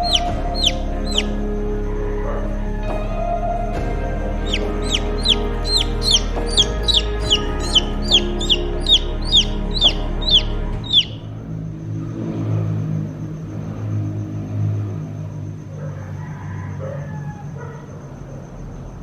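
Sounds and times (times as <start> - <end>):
chick peeping: 0.0 - 1.3, 4.4 - 11.3.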